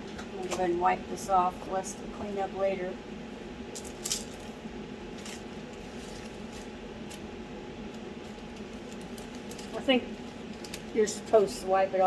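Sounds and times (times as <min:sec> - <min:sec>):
steady hum: 0:00.0 - 0:12.0.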